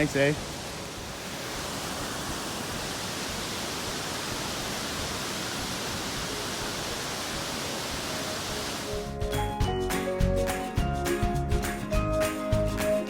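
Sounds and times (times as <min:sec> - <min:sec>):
waterfall rushing: 0:00.0 - 0:09.2.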